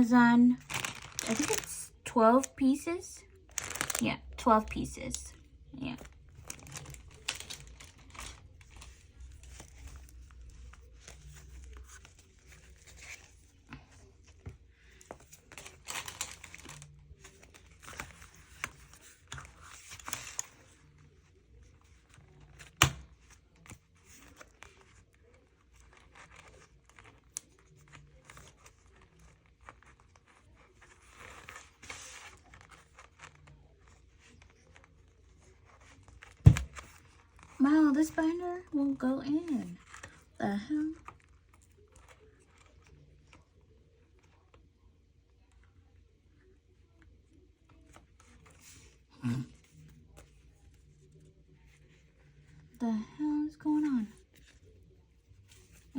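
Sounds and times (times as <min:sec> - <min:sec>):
packaging crinkling and tearing: 0:00.5 - 0:02.6, 0:03.3 - 0:05.3, 0:06.0 - 0:13.5, 0:15.0 - 0:21.0.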